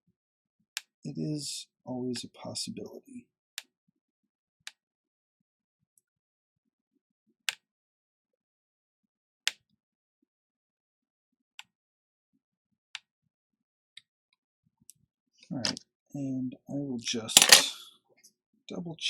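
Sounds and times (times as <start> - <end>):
pick scraping clicks: 17.4 - 17.7.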